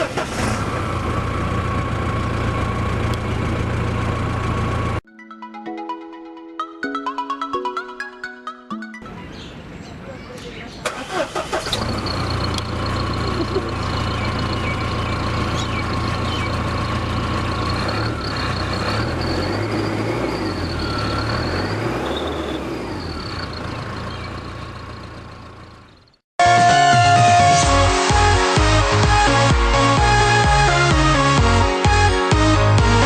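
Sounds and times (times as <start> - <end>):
car engine idling: 0.0 - 5.0, 10.9 - 26.2.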